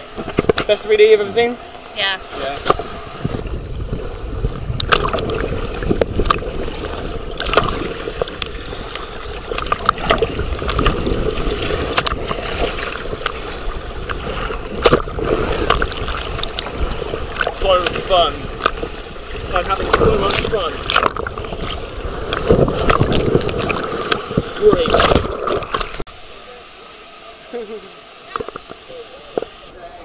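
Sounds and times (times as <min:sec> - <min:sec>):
water splashing and gurgling: 0:00.0 - 0:27.1
wind on microphone: 0:02.7 - 0:26.0.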